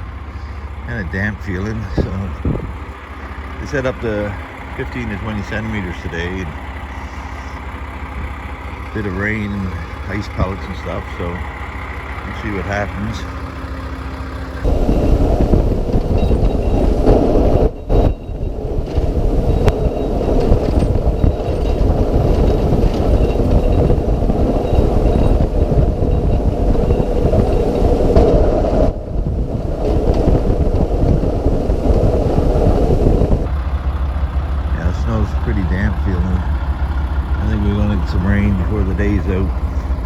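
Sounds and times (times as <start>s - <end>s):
truck engine and road rumble: 0.0s - 40.0s.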